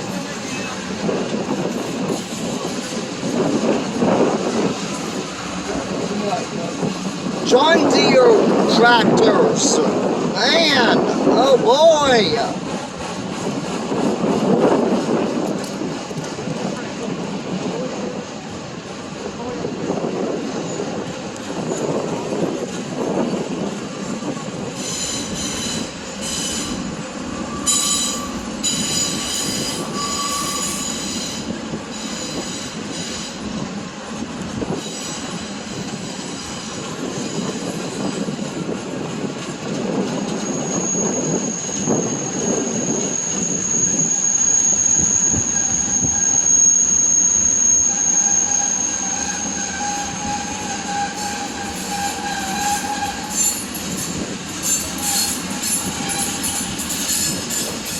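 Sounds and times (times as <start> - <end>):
train cars rumbling on rails: 0.0 - 57.9
high-pitched wheel squeal: 24.8 - 33.4, 40.3 - 57.9.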